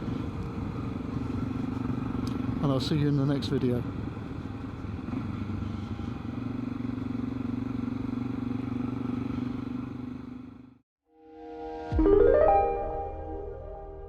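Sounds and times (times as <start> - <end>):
motorcycle engine running: 0.0 - 10.8.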